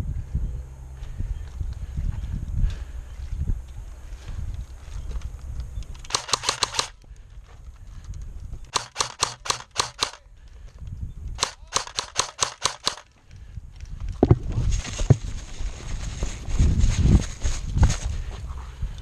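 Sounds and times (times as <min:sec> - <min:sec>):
airsoft gun bursts: 0:06.0 - 0:07.0, 0:08.7 - 0:10.2, 0:11.4 - 0:13.1.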